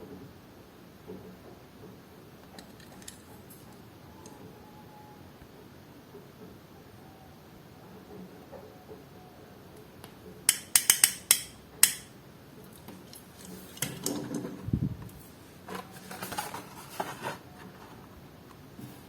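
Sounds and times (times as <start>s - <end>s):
packaging rustling and crinkling: 15.2s - 18.2s.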